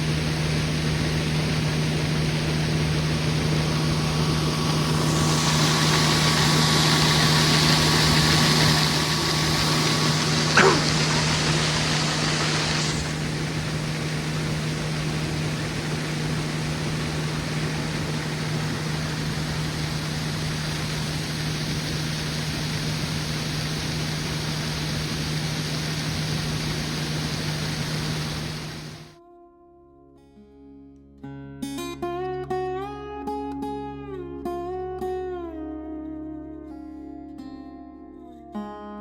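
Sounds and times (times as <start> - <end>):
diesel engine droning: 0.0 - 29.2
rushing hiss: 4.3 - 29.1.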